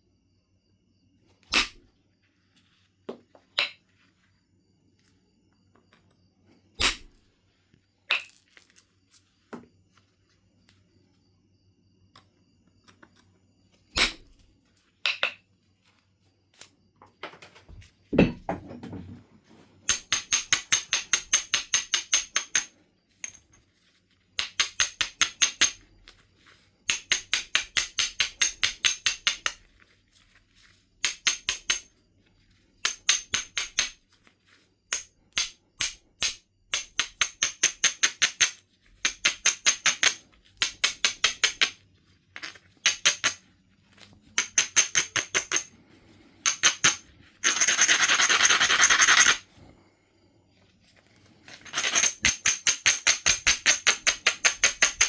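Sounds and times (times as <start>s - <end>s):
stone knocking on stone: 17.6s - 19.2s.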